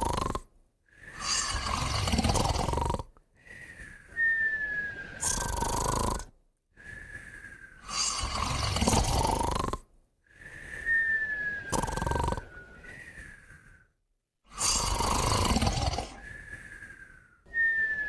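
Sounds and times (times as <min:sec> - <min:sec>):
pets snoring: 0:00.0 - 0:03.2, 0:04.9 - 0:06.4, 0:07.8 - 0:09.9, 0:11.6 - 0:12.8, 0:14.5 - 0:16.4
thin whistle of snoring breath: 0:00.0 - 0:18.0.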